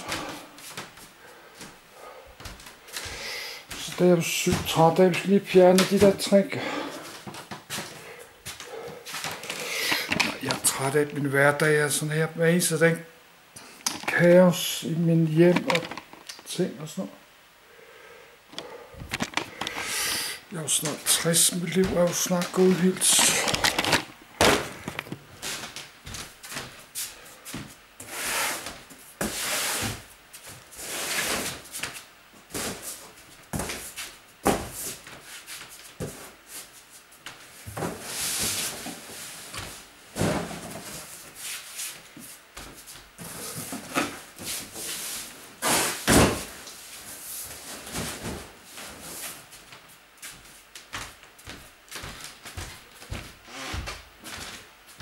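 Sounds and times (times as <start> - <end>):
scraping: 15.4 - 16.6.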